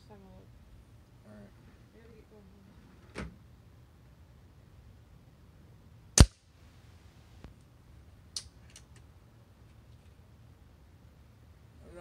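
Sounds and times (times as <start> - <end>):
air rifle shot: 6.2 - 6.4.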